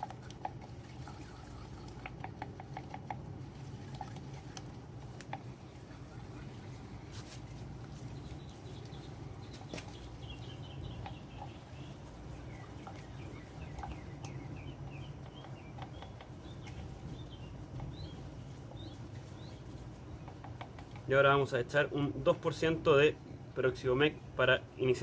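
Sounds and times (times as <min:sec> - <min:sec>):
small bird chirping: 0:08.0 - 0:20.8.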